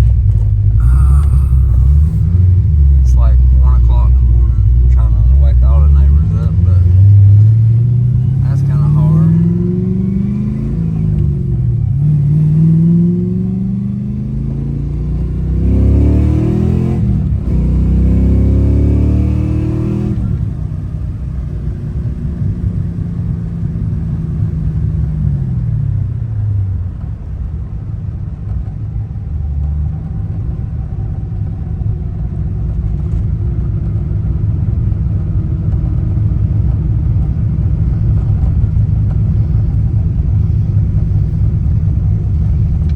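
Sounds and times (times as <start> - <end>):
car engine revving: 0.0 - 27.5, 33.9 - 42.9.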